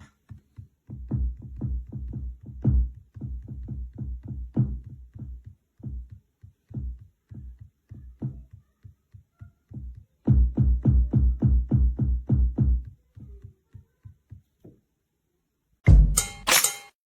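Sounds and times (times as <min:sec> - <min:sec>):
electronic bass kick hits: 0:15.9 - 0:16.3.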